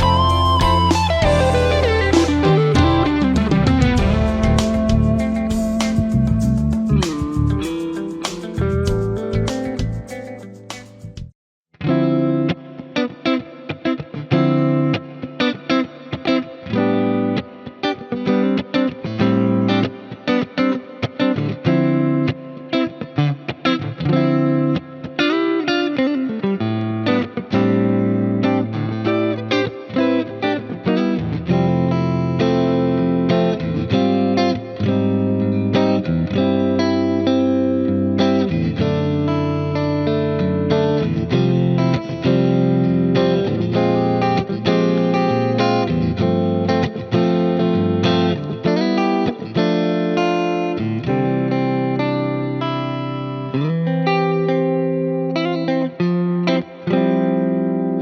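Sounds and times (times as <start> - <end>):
electric guitar with delay and reverb: 0.0 - 10.9, 11.8 - 58.0
backing track: 0.0 - 11.3.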